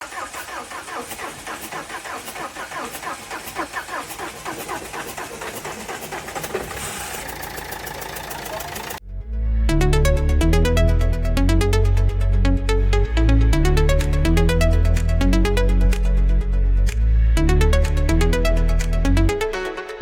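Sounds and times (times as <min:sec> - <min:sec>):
car engine cranking on starter: 0:00.0 - 0:09.0
car engine running: 0:00.0 - 0:09.0.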